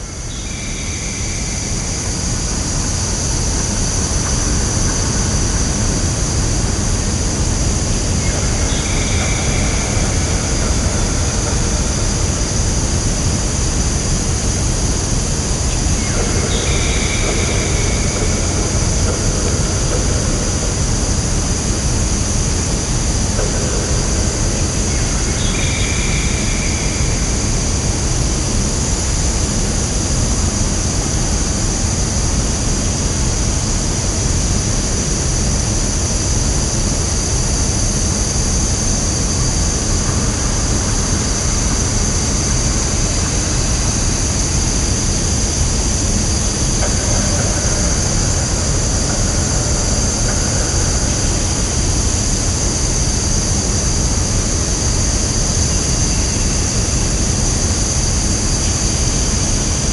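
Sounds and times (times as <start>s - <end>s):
steady rushing noise: 35.8s - 59.9s.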